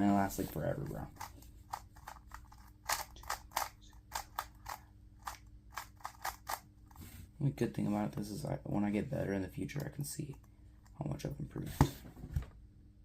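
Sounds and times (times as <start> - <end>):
puzzle cube clicking turns: 0.8 - 6.7.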